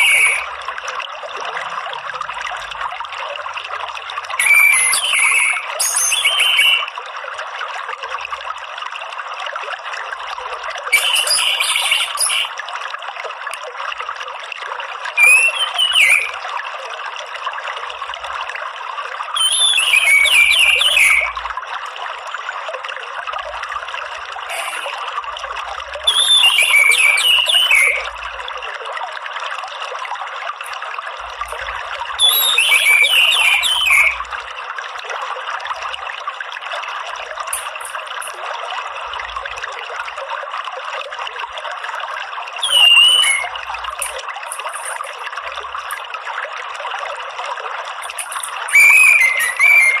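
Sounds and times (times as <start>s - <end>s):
trickle of running water: 0.0s - 50.0s
thrush warbling song: 30.6s - 34.5s, 42.6s - 46.0s, 48.0s - 50.0s.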